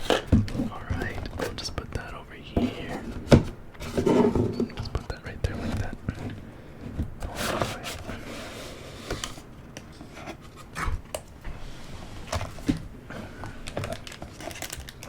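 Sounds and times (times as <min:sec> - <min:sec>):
cardboard rustling scrape: 0:02.6 - 0:04.7, 0:05.5 - 0:12.8.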